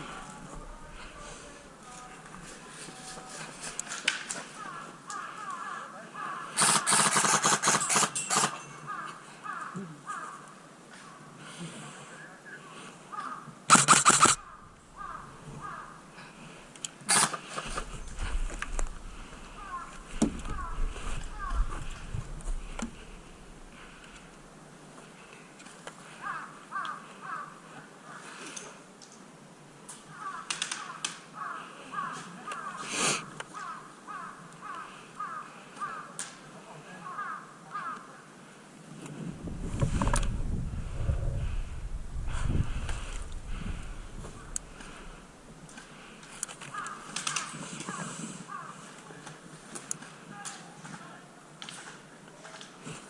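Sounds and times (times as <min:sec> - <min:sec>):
crows cawing: 0:04.3 - 0:07.7, 0:08.4 - 0:11.3, 0:13.1 - 0:24.4, 0:26.0 - 0:28.4, 0:30.0 - 0:38.3, 0:42.6 - 0:49.2
airsoft gun firing: 0:06.6 - 0:08.6, 0:13.7 - 0:14.5
sharp clicks or snaps: 0:13.7 - 0:14.4, 0:30.5 - 0:31.2
low rumble: 0:39.3 - 0:45.5.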